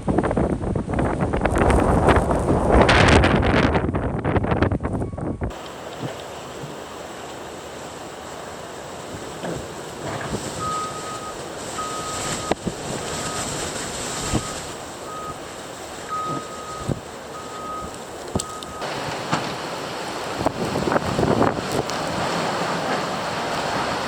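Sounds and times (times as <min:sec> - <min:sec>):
wind noise: 0:00.0 - 0:07.0, 0:08.9 - 0:24.0
vehicle backup alarm beeping: 0:10.4 - 0:19.4.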